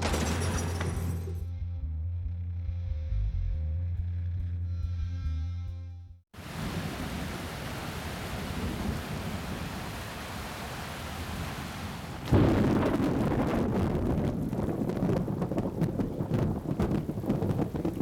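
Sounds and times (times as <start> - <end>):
rain hissing: 6.4 - 18.0
thunder clap rumbling: 6.5 - 10.2, 12.0 - 18.0.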